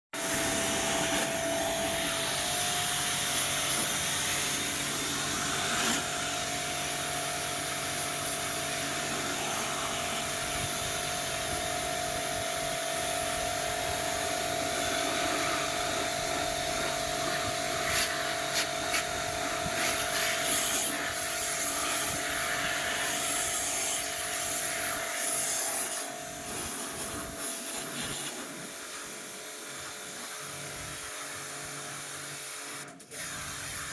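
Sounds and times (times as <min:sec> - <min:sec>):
pressure washer whine: 0:00.2 - 0:33.9
water jet hissing: 0:00.3 - 0:11.0, 0:14.8 - 0:29.1.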